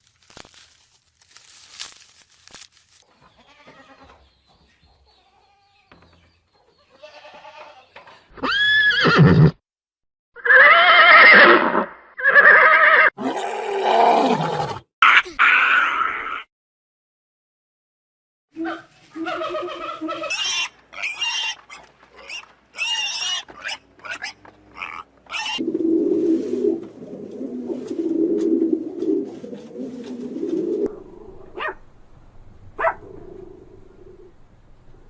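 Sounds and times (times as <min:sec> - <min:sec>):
loud pitched animal calls: 0:22.2 - 0:25.6.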